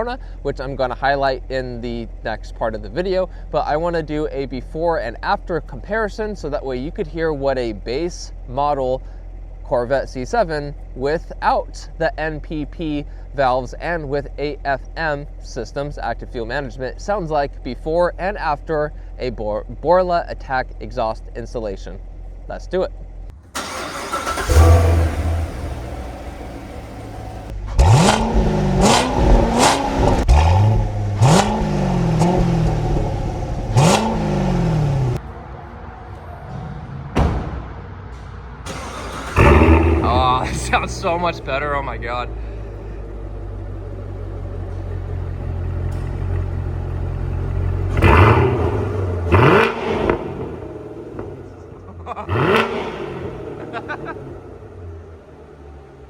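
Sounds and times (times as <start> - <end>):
car engine idling: 0.0 - 35.2, 38.7 - 56.0
car engine revving: 23.6 - 35.2, 38.7 - 56.0.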